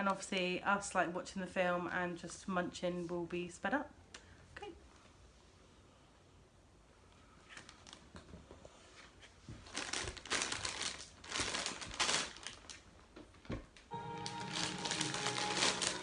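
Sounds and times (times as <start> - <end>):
crisp packet crinkling: 9.6 - 13.0, 14.0 - 16.0.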